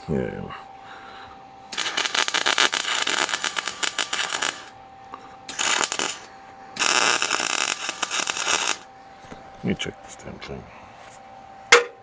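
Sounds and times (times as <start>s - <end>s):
welder arc crackling: 1.7s - 4.8s, 5.5s - 8.9s.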